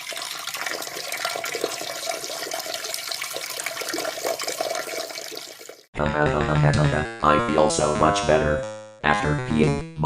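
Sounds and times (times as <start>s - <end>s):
liquid splashing into toilet water: 0.0s - 5.9s.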